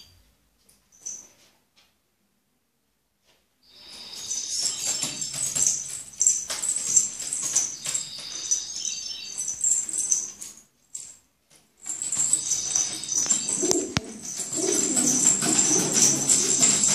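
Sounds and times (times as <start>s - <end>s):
pigeons flapping wings: 11.9s - 16.9s.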